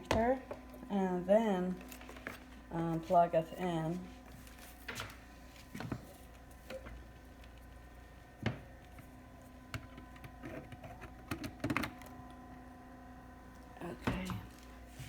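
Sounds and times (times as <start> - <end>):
faint steady hum: 0.0 - 15.0.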